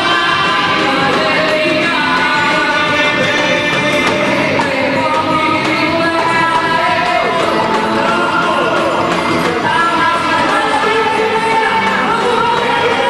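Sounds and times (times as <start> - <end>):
band playing with singing: 0.0 - 13.0.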